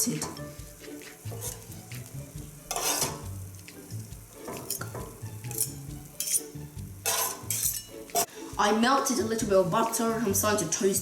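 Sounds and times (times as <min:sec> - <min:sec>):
utensil scraping frying pan: 0:00.0 - 0:08.6
light sizzle: 0:00.0 - 0:11.0.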